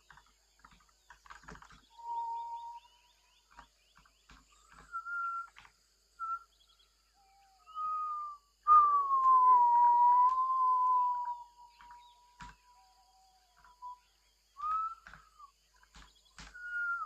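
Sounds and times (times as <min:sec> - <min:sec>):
person whistling: 0:02.0 - 0:03.0, 0:07.6 - 0:11.9, 0:14.6 - 0:15.1, 0:16.6 - 0:17.0.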